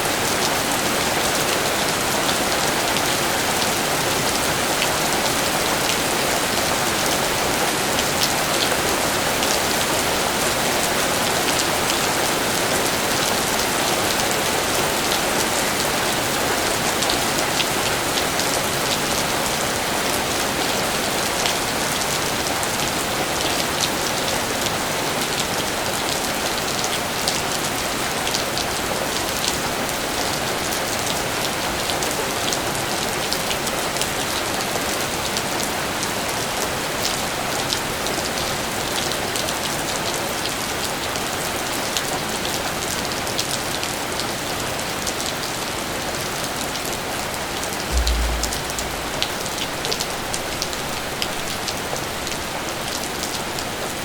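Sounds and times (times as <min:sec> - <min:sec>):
steady rain falling: 0:00.0 - 0:54.0
low thump: 0:47.9 - 0:49.9.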